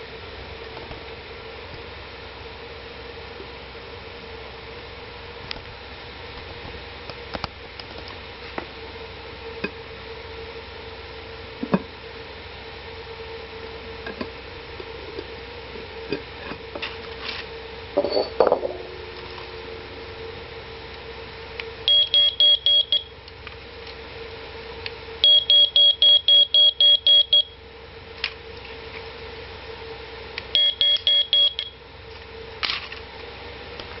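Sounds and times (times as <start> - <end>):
smoke detector beeping: 21.8 - 23.2, 25.2 - 27.6, 30.5 - 31.8.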